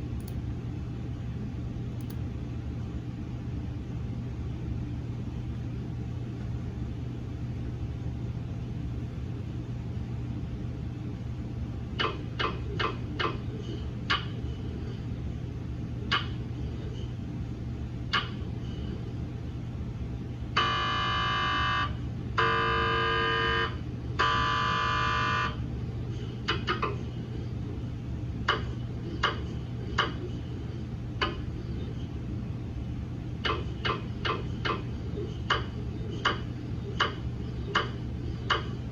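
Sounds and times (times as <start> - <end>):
steady low hum: 0.0 - 38.9
loud buzzing tones: 20.6 - 25.6.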